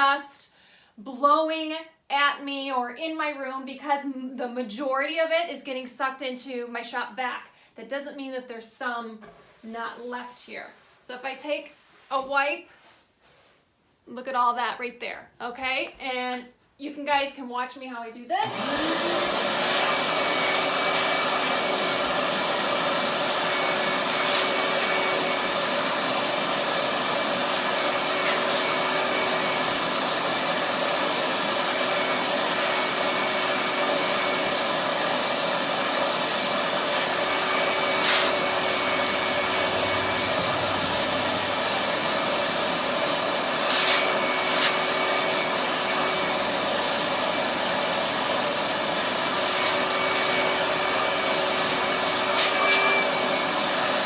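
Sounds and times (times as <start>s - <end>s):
shop vac running: 18.4s - 54.0s.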